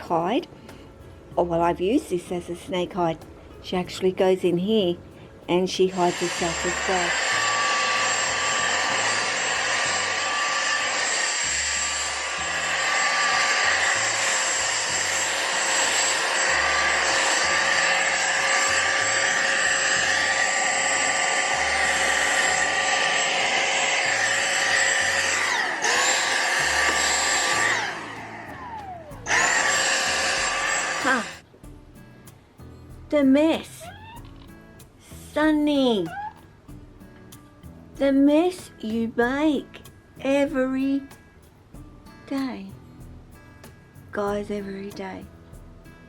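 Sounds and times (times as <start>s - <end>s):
vacuum cleaner motor whine: 5.9s - 31.4s.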